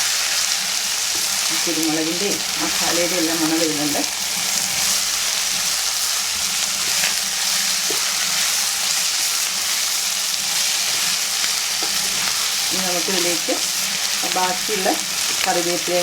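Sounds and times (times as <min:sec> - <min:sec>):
meat sizzling in oil: 0:00.0 - 0:16.0.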